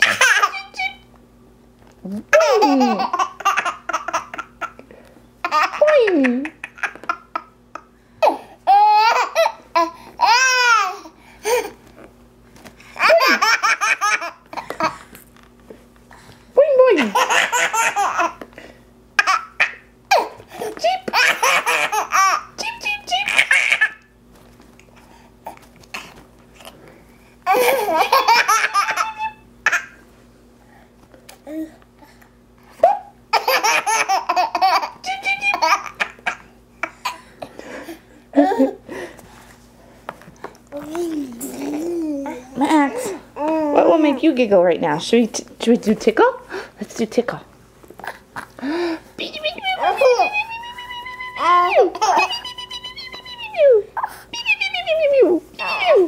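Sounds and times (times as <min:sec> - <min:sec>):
baby laughing: 0:00.0 - 0:00.8, 0:02.3 - 0:04.8, 0:05.4 - 0:11.7, 0:13.0 - 0:15.0, 0:17.0 - 0:18.4, 0:19.2 - 0:24.1, 0:27.5 - 0:30.0, 0:32.8 - 0:37.2, 0:49.7 - 0:54.9.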